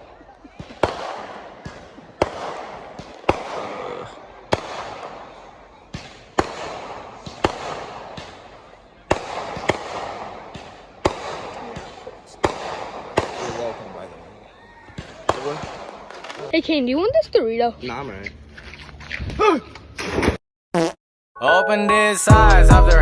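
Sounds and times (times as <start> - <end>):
fireworks bangs with crackle: 0.4 - 14.3, 14.9 - 16.6.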